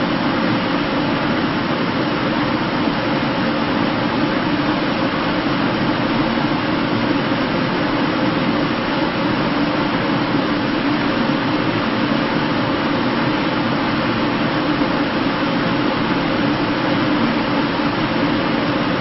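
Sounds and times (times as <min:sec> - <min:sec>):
ventilation system rushing air: 0:00.0 - 0:19.0.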